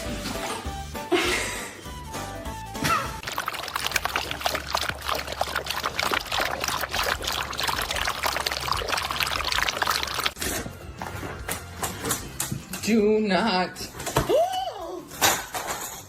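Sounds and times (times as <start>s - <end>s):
water pouring and splashing: 3.2s - 10.6s.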